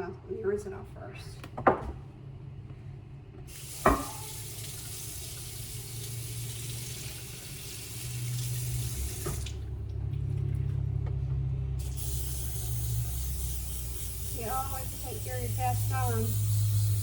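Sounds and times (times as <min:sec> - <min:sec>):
kitchen tap running: 0:03.5 - 0:10.9, 0:11.8 - 0:17.0
griddle knocking: 0:03.8 - 0:04.4.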